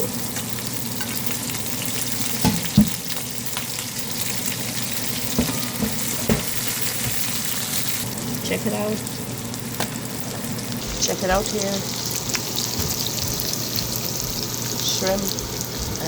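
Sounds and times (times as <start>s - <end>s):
vegetables sizzling in oil: 0.0s - 16.0s
spoon knocking against pot: 2.4s - 3.0s, 5.3s - 6.6s.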